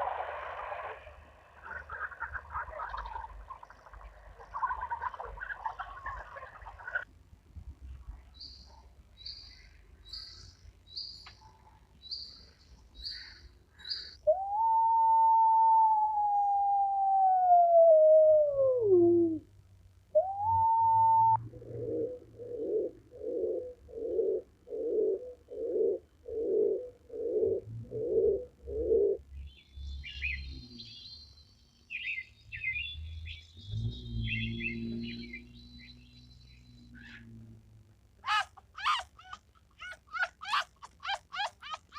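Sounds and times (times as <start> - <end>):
small bird chirping: 8.2 - 14.2, 29.3 - 37.4
pigeon cooing: 14.3 - 19.5, 20.2 - 29.2, 38.2 - 41.9
long sinking animal call: 20.2 - 22.2, 38.2 - 41.9.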